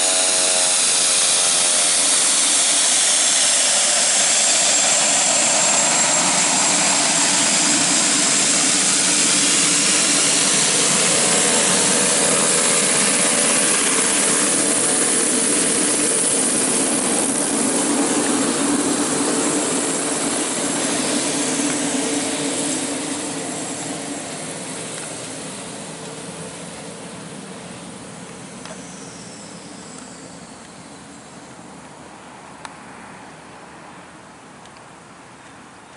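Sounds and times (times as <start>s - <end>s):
turboprop engine running: 0.0s - 32.0s.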